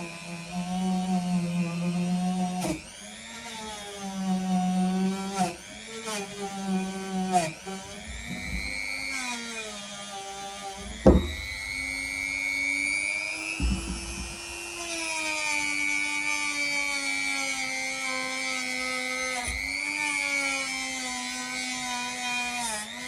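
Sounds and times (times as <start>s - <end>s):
rotary tool whining: 0.3s - 23.0s.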